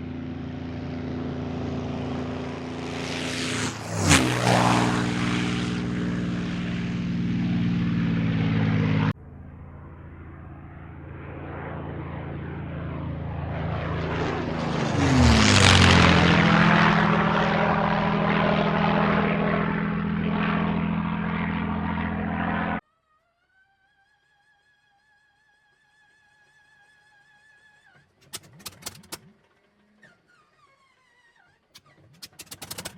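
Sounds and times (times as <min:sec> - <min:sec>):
propeller airplane engine running: 0:00.0 - 0:22.8, 0:26.1 - 0:32.9
propeller plane passing by: 0:00.0 - 0:22.8, 0:31.9 - 0:32.9.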